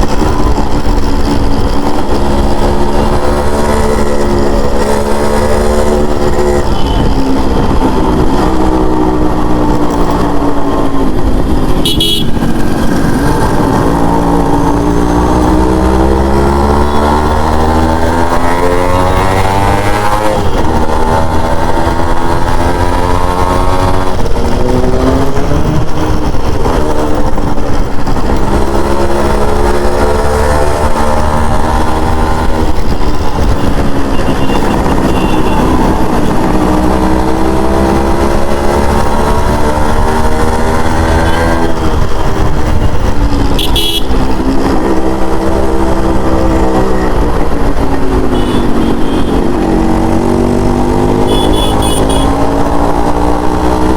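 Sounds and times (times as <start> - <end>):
motorcycle engine accelerating: 0.0 - 53.9
horn beep: 6.7 - 7.3, 11.8 - 12.4, 33.6 - 36.0, 43.6 - 44.1, 48.3 - 49.5, 51.2 - 52.4.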